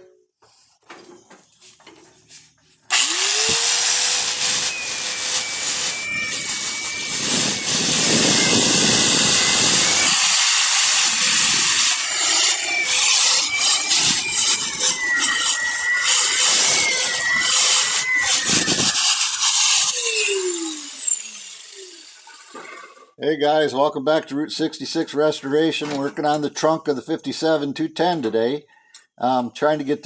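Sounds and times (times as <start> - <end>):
electric grinder grinding metal: 2.9 - 22.6.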